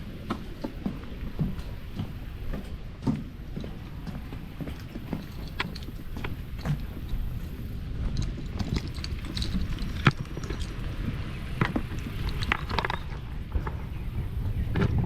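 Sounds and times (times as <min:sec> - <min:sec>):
clicks and knocks of tools: 0:04.7 - 0:07.5, 0:11.6 - 0:13.2.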